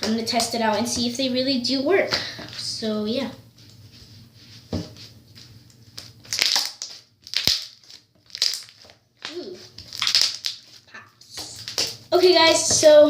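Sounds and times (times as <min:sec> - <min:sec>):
slime squeezed popping air: 0:06.3 - 0:10.7.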